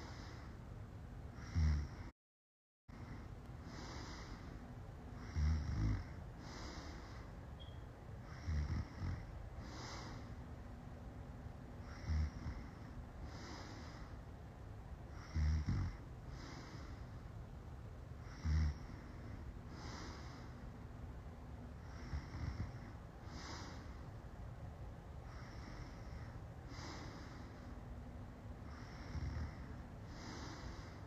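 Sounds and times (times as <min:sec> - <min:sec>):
woman snoring: 0:01.4 - 0:02.1, 0:05.2 - 0:07.0, 0:08.2 - 0:10.2, 0:11.8 - 0:14.0, 0:15.1 - 0:16.8, 0:18.2 - 0:19.1, 0:21.8 - 0:23.9, 0:28.7 - 0:31.0.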